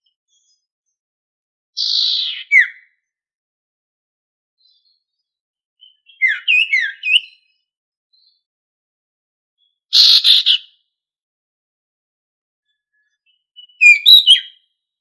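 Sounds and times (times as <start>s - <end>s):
songbird whistled notes: 5.8s - 7.4s, 13.6s - 14.6s
harsh bird chattering: 10.0s - 10.7s.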